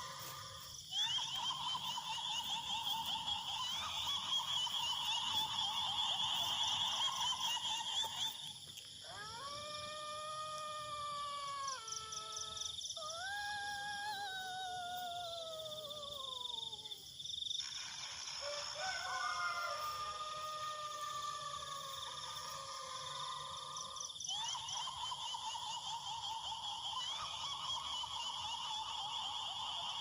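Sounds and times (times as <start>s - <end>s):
high wailing shriek: 0.0s - 7.2s, 18.4s - 24.4s.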